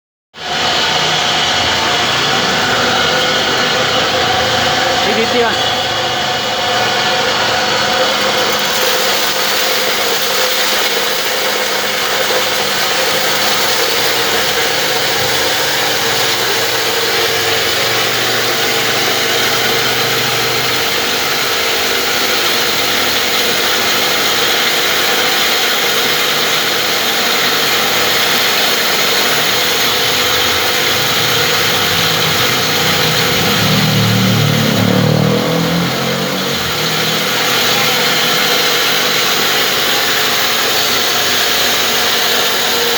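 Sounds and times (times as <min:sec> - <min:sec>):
grinding machine running: 0:00.4 - 0:42.9
deep hum: 0:31.0 - 0:37.3.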